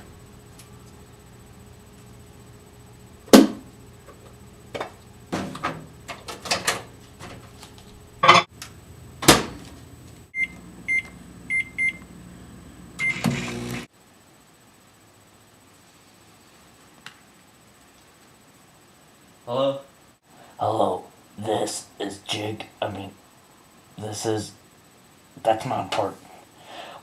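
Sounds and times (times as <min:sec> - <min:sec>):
microwave oven hum: 0:00.0 - 0:15.6.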